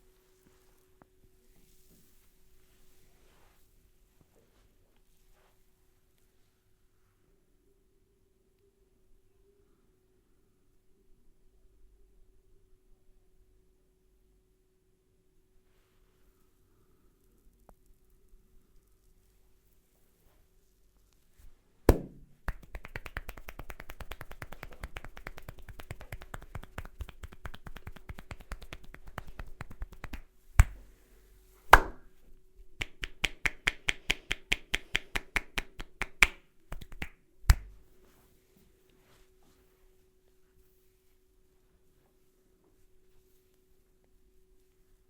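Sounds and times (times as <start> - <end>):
faint steady hum: 0.0 - 45.0
hands slapping and tapping head: 21.9 - 30.9, 31.7 - 32.1, 32.8 - 37.9.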